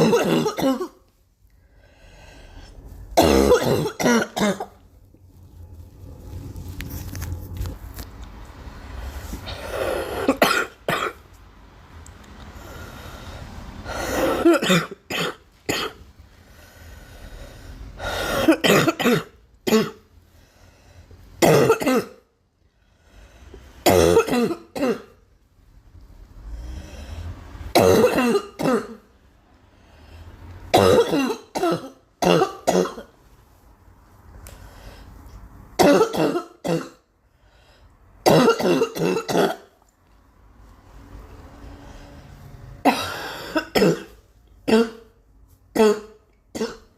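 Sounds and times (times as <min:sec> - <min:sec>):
girl coughing: 0:00.0 - 0:01.0, 0:03.2 - 0:04.8, 0:09.7 - 0:11.2, 0:14.1 - 0:16.0, 0:18.4 - 0:20.0, 0:21.4 - 0:22.2, 0:23.8 - 0:25.2, 0:27.7 - 0:29.0, 0:30.8 - 0:33.1, 0:35.8 - 0:37.0, 0:38.2 - 0:39.7, 0:42.8 - 0:45.1, 0:45.8 - 0:46.9
drawn breath: 0:01.5 - 0:03.1.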